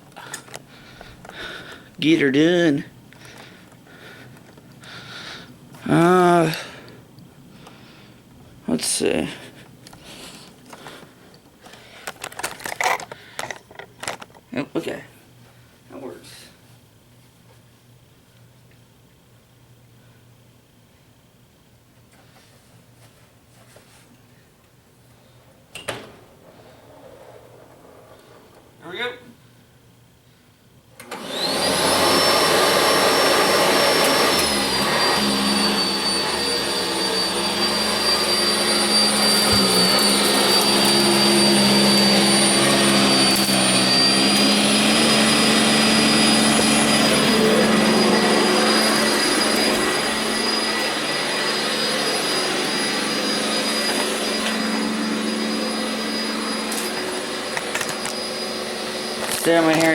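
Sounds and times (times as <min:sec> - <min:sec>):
vacuum cleaner motor whining: 0:26.4 - 0:28.9, 0:31.0 - 0:59.9.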